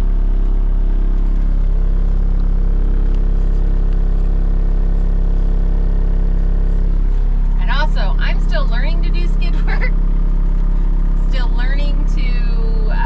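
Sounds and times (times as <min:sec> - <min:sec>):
loader engine running: 0:00.0 - 0:13.0.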